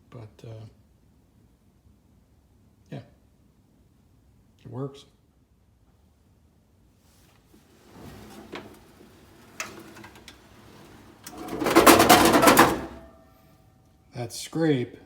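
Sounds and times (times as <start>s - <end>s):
generator sliding on drawer slides: 7.6s - 13.1s
loud metal scrape: 7.8s - 13.1s.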